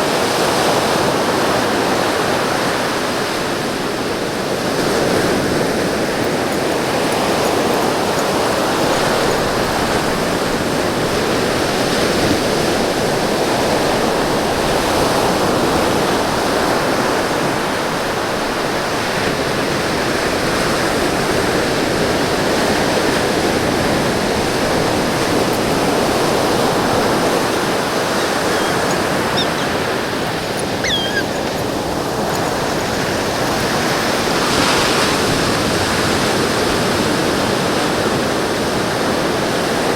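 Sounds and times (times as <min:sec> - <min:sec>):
ocean surf washing onto beach: 0:00.0 - 0:39.9
faint high chirps: 0:27.5 - 0:33.0.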